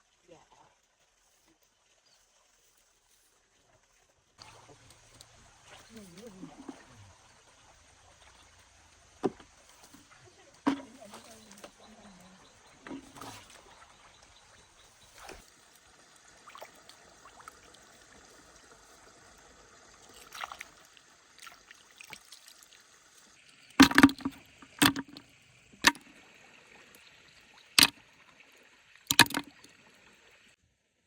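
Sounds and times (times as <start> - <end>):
water splashing: 4.4 - 22.9, 23.7 - 28.5, 29.1 - 30.0.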